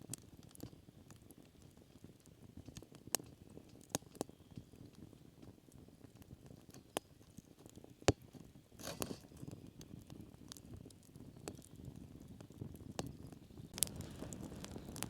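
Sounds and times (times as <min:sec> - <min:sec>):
sharp clicks and crackles: 0:12.9 - 0:15.0.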